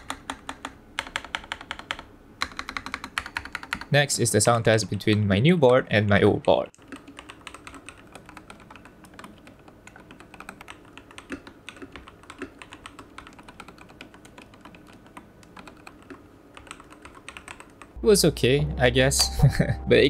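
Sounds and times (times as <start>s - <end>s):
mechanical keyboard typing: 0.0s - 3.9s, 6.1s - 18.0s.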